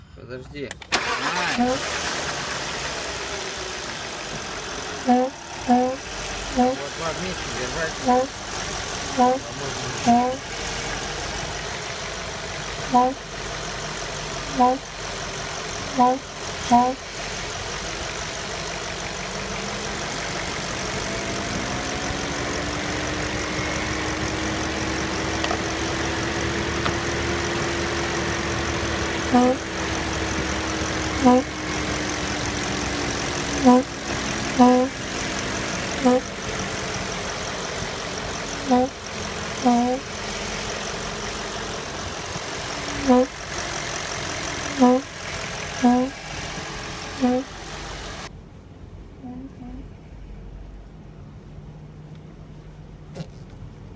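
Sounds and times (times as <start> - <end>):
car engine idling: 0.5 - 49.2
valve humming hoots: 29.3 - 31.8, 33.6 - 35.1, 43.0 - 43.4.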